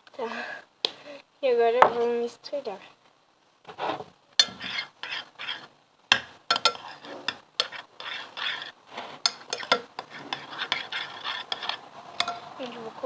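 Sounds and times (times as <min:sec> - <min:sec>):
spoon clinking and scraping bowl: 0:04.4 - 0:12.6.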